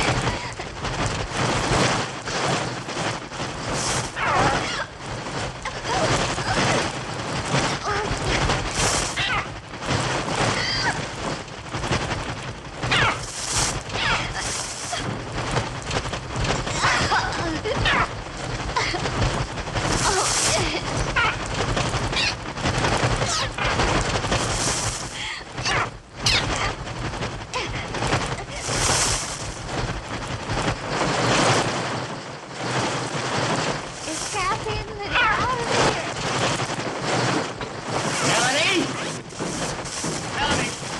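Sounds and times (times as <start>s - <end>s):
synthesized wing-flutter and rattle: 0.0s - 40.9s
electronic shrieking bird calls: 22.1s - 22.4s, 25.7s - 26.6s.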